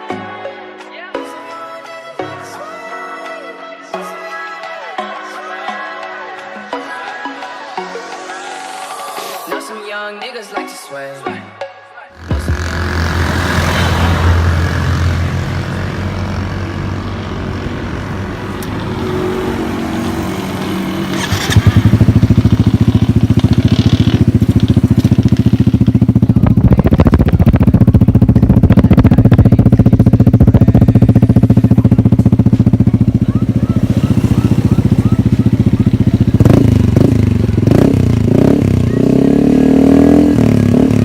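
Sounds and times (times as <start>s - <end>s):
motorcycle engine running: 12.2s - 41.0s.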